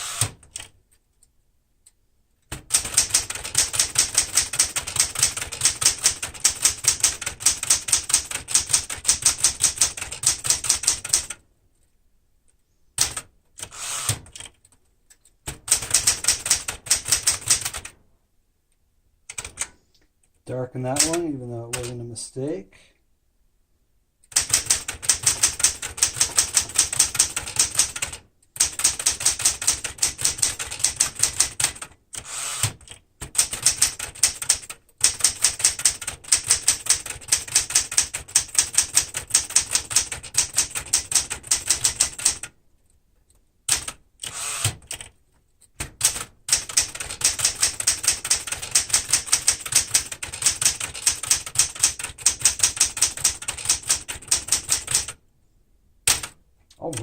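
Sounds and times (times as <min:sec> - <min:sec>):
manual typewriter clacking: 0:02.5 - 0:11.4, 0:15.4 - 0:17.9, 0:19.3 - 0:19.7, 0:20.8 - 0:22.0, 0:24.3 - 0:42.5, 0:43.7 - 0:55.2, 0:56.1 - 0:57.0.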